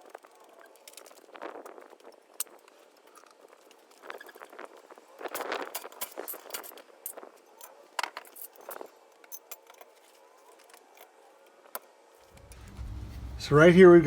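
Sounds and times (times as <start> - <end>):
light metallic clinks and clicks: 5.3 - 10.2
faint hiss: 12.4 - 14.0.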